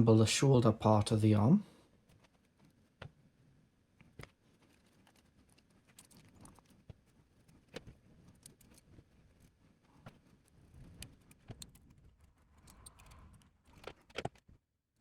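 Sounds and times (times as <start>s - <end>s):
plastic parts clicking and tapping: 12.6s - 14.5s.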